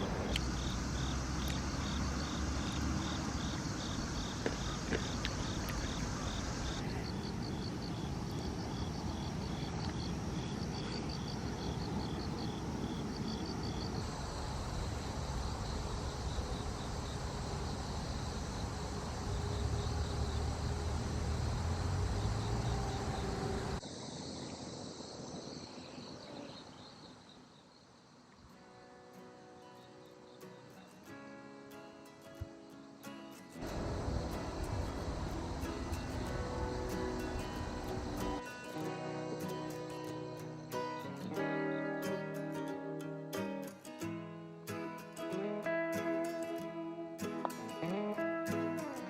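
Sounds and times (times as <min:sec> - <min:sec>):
insects chirping in pulses: 0:00.0 - 0:49.0
steady low rumble: 0:33.6 - 0:38.4.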